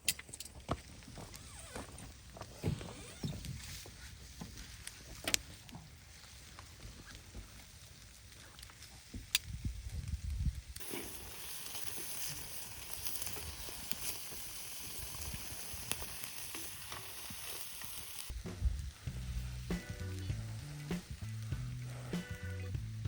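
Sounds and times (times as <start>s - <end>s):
food sizzling in a pan: 10.8s - 18.4s.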